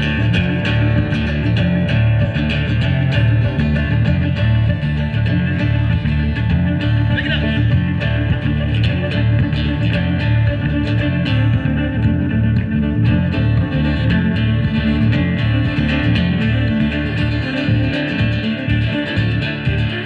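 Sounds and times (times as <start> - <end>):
guitar: 0.0 - 20.0
live band playing instrumental: 0.0 - 20.0
rhythmic bass line: 0.0 - 20.0.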